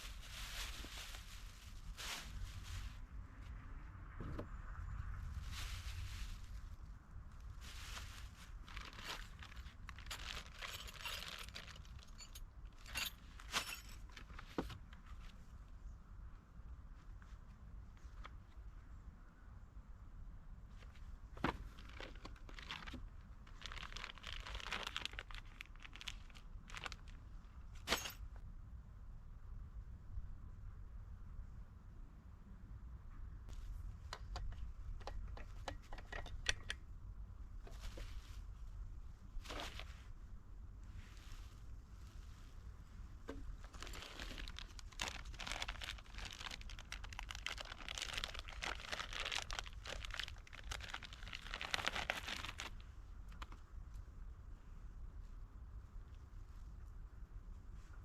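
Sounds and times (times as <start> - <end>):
rustling and crinkling handling: 0.0 - 3.7, 5.1 - 15.8, 20.6 - 28.3, 37.5 - 40.2, 40.8 - 54.1.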